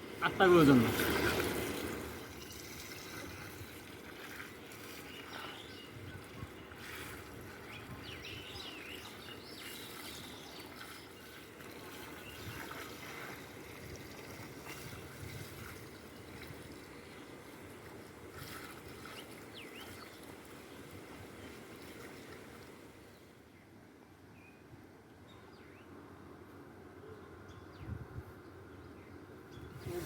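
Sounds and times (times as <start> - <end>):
water trickling and bubbling: 0.5 - 22.8.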